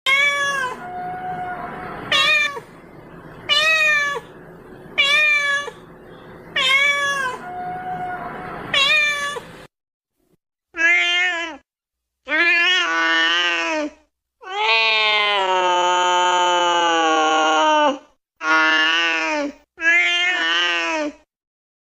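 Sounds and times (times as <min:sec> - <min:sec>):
cat meowing: 0:00.1 - 0:02.7, 0:03.5 - 0:04.3, 0:05.0 - 0:05.8, 0:06.6 - 0:09.5, 0:10.8 - 0:11.6, 0:14.4 - 0:17.8, 0:19.8 - 0:20.8.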